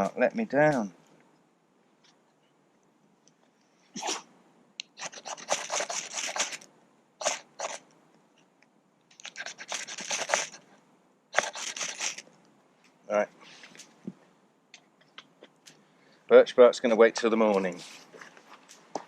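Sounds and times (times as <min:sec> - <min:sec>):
ferro rod scraping rasps: 0:04.8 - 0:07.8, 0:09.1 - 0:10.7, 0:11.3 - 0:12.3.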